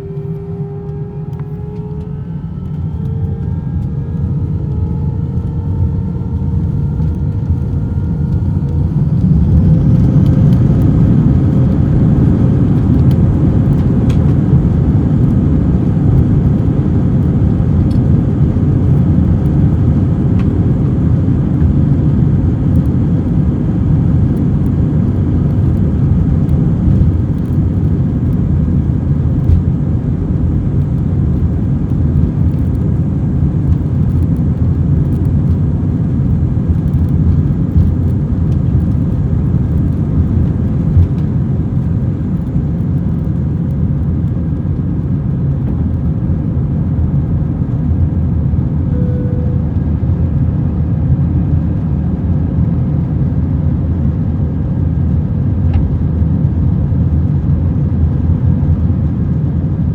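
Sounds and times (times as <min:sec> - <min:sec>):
jet engines spooling up: 0:00.0 - 0:15.3.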